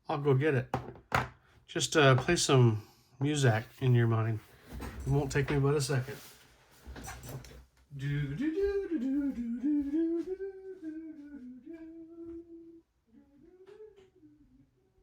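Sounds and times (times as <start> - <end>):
person humming a tune: 8.1 - 14.6.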